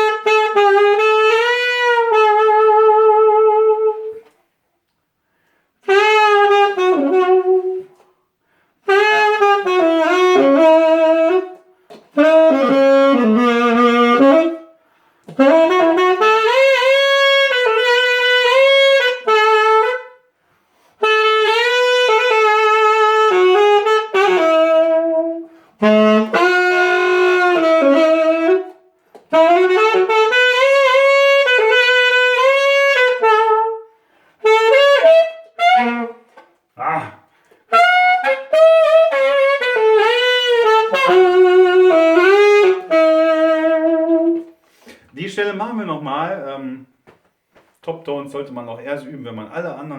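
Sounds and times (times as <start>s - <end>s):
saxophone melody: 0.0s - 4.5s, 5.2s - 47.0s
player breaths: 5.2s - 5.8s, 44.6s - 45.1s.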